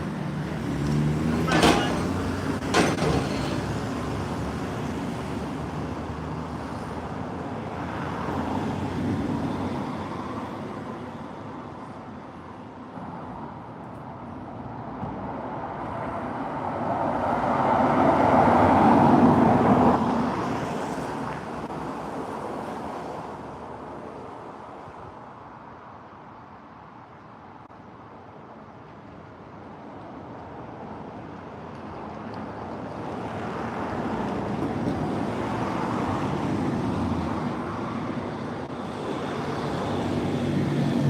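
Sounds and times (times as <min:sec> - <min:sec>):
vehicles passing: 0:00.0 - 0:41.0.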